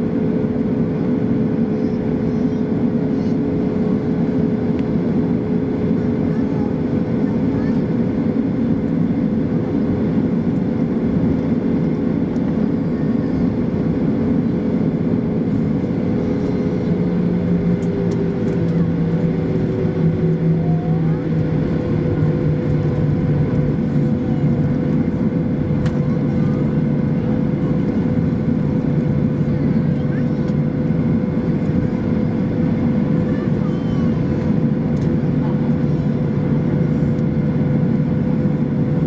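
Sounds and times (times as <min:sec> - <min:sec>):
airplane cabin engine drone: 0:00.0 - 0:39.0
steady hum tones: 0:15.0 - 0:39.0
low hum: 0:15.1 - 0:39.0.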